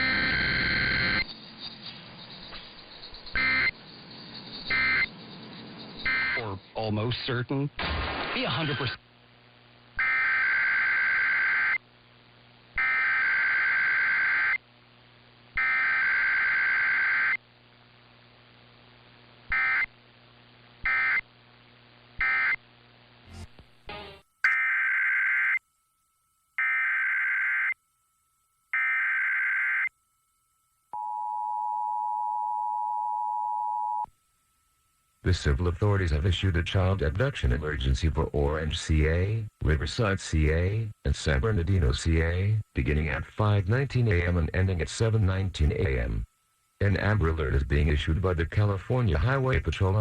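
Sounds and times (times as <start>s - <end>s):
data bursts: 0.0s - 6.9s
steady mains hum: 0.0s - 50.0s
two-tone attention signal: 3.3s - 3.8s, 4.6s - 5.1s, 6.0s - 6.5s.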